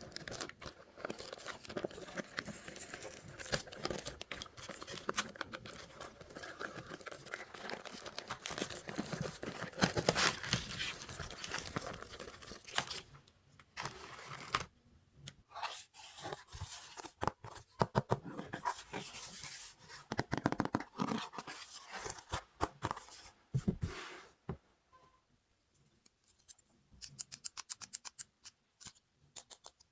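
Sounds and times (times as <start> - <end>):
packaging tearing and crinkling: 0.0 - 13.0.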